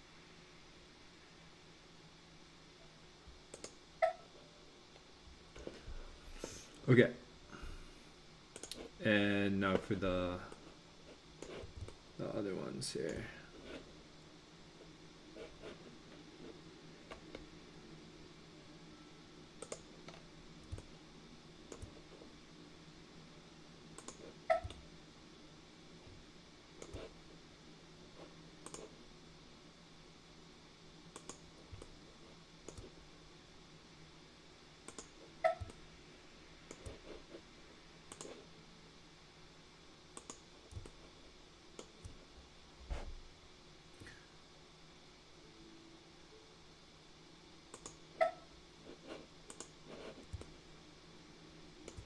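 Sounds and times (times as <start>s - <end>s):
faint low hum: 0.0s - 52.0s
computer mouse clicking: 3.5s - 3.8s, 8.5s - 8.9s, 11.4s - 12.0s, 19.6s - 21.0s, 21.7s - 22.1s, 23.9s - 24.8s, 26.8s - 27.2s, 28.6s - 28.9s, 31.1s - 32.0s, 32.6s - 33.0s, 34.8s - 35.8s, 36.7s - 37.2s, 38.1s - 38.4s, 40.1s - 41.1s, 41.8s - 42.2s, 47.7s - 48.0s, 49.2s - 50.6s.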